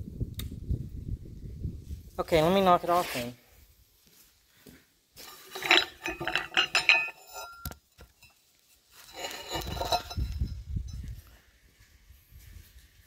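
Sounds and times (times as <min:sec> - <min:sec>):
metal pieces shuffling: 0:05.2 - 0:07.6, 0:09.0 - 0:10.4
steel clinking and ringing: 0:05.2 - 0:11.2.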